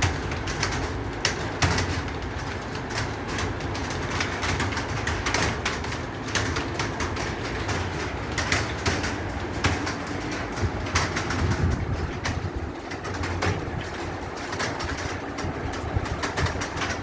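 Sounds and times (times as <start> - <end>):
keyboard typing: 0.0 - 17.0.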